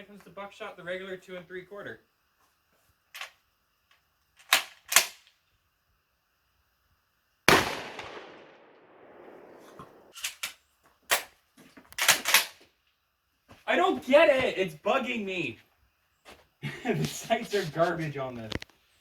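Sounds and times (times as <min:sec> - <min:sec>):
shotgun shot: 0:07.5 - 0:10.1.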